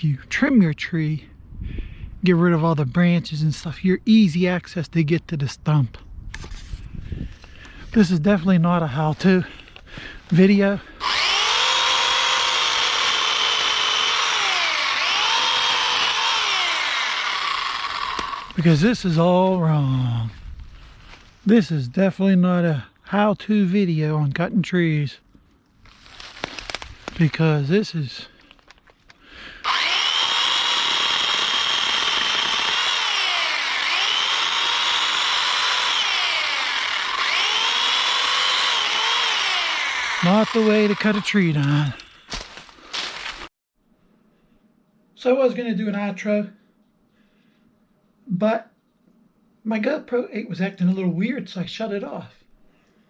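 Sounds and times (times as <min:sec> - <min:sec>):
chainsaw whining: 0:10.0 - 0:19.1, 0:29.6 - 0:43.5.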